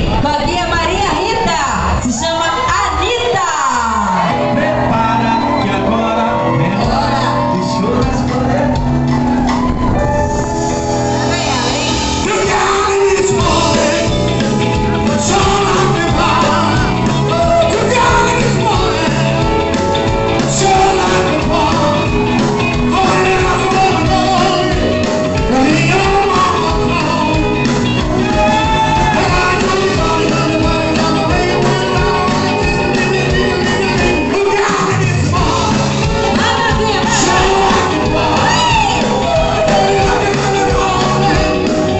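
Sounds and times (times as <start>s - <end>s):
rock song over sound system: 0.0s - 41.9s.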